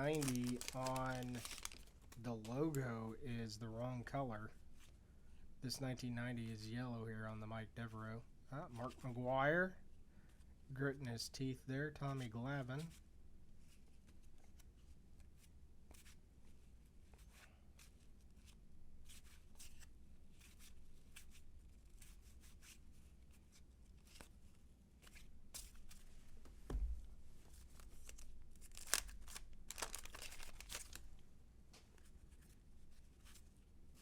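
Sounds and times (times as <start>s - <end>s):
paper tearing and rustling: 0.0s - 1.9s, 27.6s - 31.0s
thump: 26.7s - 27.1s.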